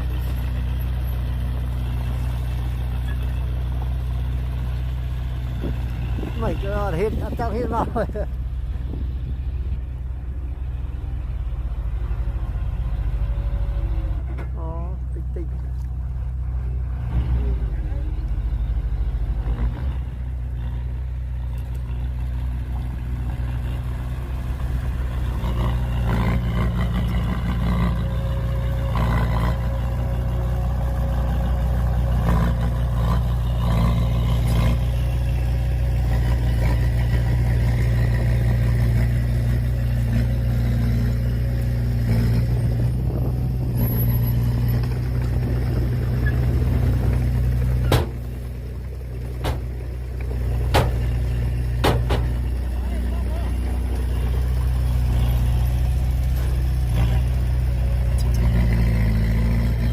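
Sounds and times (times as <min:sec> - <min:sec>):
heavy diesel engine droning: 0:00.0 - 0:59.9
metal clanks and rattles: 0:46.3 - 0:48.5, 0:49.2 - 0:49.9, 0:50.5 - 0:52.5.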